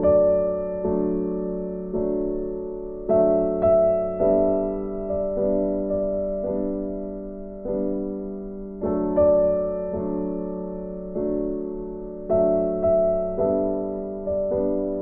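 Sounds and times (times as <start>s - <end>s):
slow piano tune: 0.0s - 15.0s.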